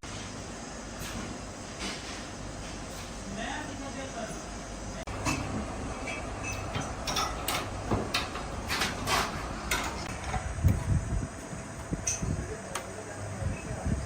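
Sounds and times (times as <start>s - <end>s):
steady low hum: 0.0s - 14.0s
steel parts clanking: 5.2s - 10.6s.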